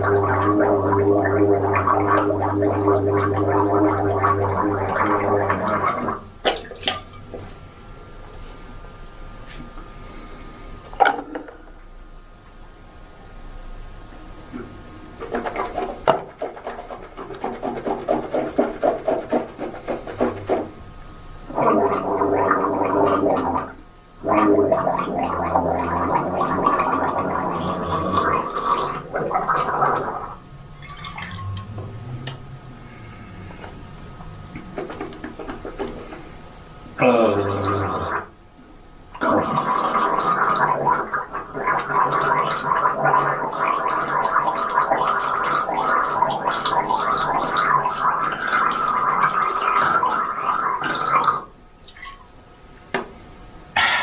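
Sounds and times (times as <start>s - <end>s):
person gargling water: 0.0s - 7.5s, 14.6s - 38.4s, 39.2s - 51.6s, 53.8s - 54.0s.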